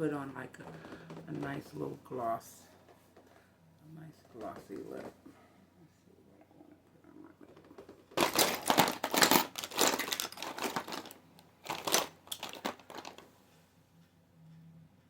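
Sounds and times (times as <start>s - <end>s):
crinkling rustling handling noise: 8.0s - 13.3s.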